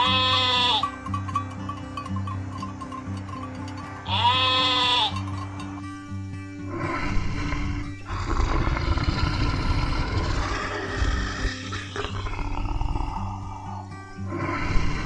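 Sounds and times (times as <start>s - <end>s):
background music: 0.0s - 15.0s
large animal roaring: 6.6s - 15.0s.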